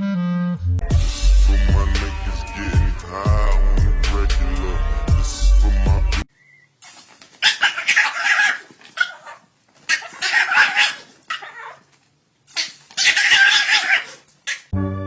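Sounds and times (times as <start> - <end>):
animal harsh noisy cries: 7.4 - 11.9, 12.5 - 14.7.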